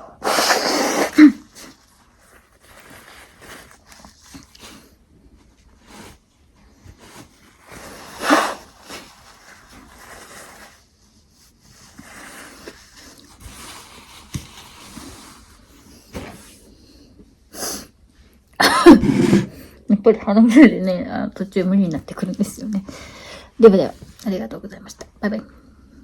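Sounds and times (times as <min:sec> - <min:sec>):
person blowing nose: 0:00.0 - 0:01.8, 0:07.8 - 0:09.1, 0:18.6 - 0:19.6
tissue rustling: 0:01.2 - 0:16.8.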